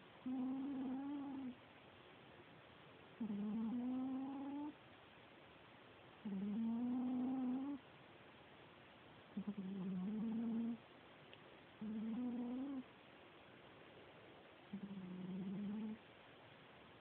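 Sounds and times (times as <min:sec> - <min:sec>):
cat snoring: 0:00.2 - 0:01.6, 0:03.2 - 0:04.8, 0:06.2 - 0:07.8, 0:09.4 - 0:10.8, 0:11.8 - 0:12.9, 0:14.7 - 0:16.0.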